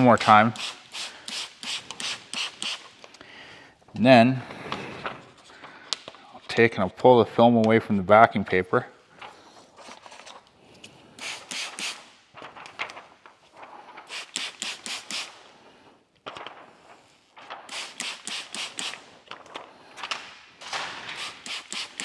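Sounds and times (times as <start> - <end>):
spray bottle hissing sprays: 0.0 - 2.9, 11.2 - 12.0, 14.1 - 15.4, 17.7 - 19.0, 21.2 - 22.0.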